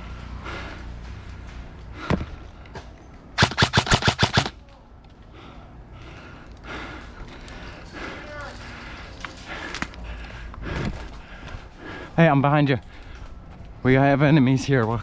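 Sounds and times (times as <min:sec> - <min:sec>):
airsoft gunshots: 0:03.4 - 0:04.6.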